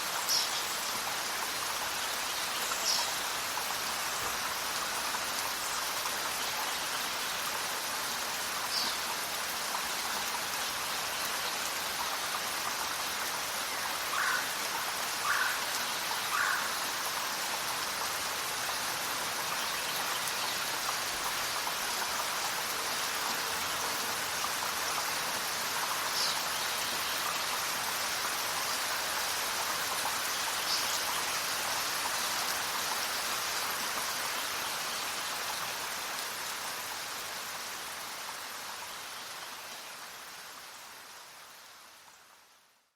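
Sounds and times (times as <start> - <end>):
rain falling: 0.0 - 42.9
low bird calls: 14.1 - 14.5, 15.2 - 16.8.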